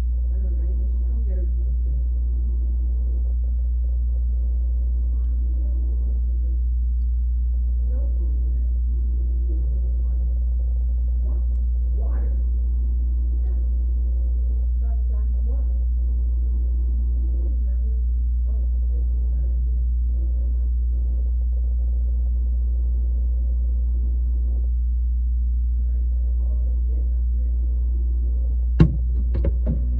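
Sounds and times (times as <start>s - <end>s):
loud low hum: 0.0s - 29.9s.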